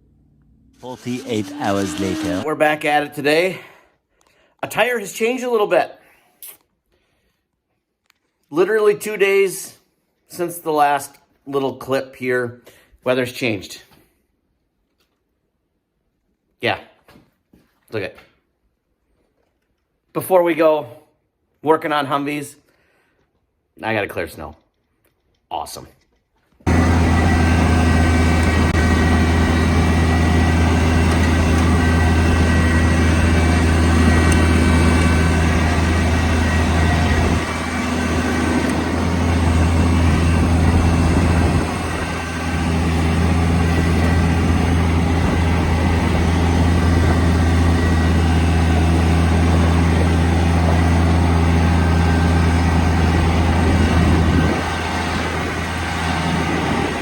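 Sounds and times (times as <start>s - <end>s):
tractor engine running: 0.0s - 2.5s, 26.7s - 57.0s.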